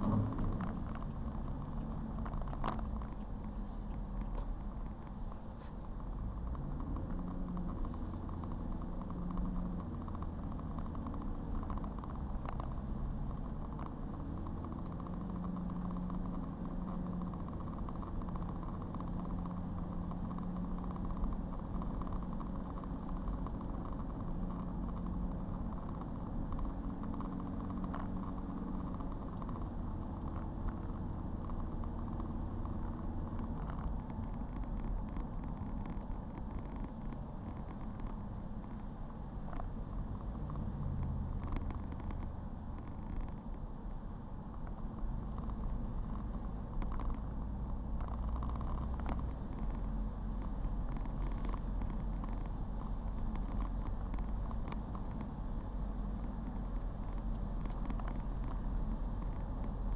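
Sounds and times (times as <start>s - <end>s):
car engine hum: 0.0s - 59.9s
road noise rumble: 0.0s - 59.9s.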